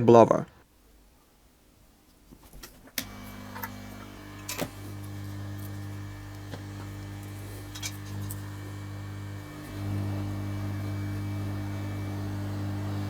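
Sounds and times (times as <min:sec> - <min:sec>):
blower fan humming: 0:02.9 - 0:13.0
blower switch click: 0:03.0 - 0:08.6.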